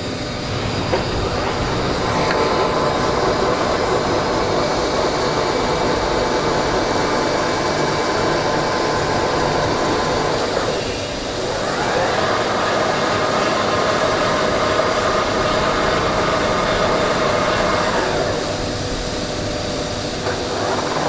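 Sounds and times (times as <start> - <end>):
metal lathe cutting: 0.0 - 21.0.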